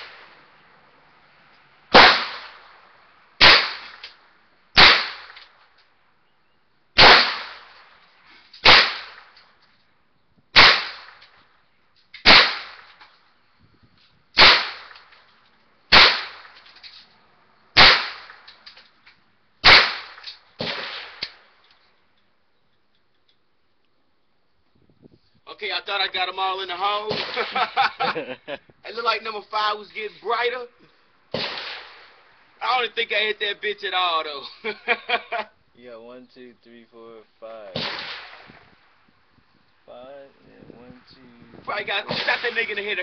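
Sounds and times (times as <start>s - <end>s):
gunshots with echo: 1.9s - 2.6s, 3.4s - 4.0s, 4.8s - 5.4s, 7.0s - 7.8s, 8.6s - 9.3s, 10.6s - 11.2s, 14.4s - 15.0s, 15.9s - 16.6s, 17.8s - 18.4s, 19.6s - 21.2s, 27.1s - 27.9s, 31.3s - 32.2s, 37.7s - 38.6s, 42.1s - 42.8s.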